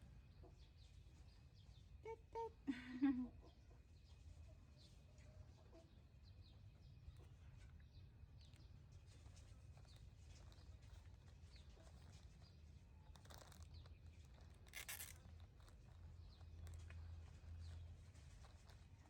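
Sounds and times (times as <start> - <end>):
brief rustle: 13.1 - 19.0.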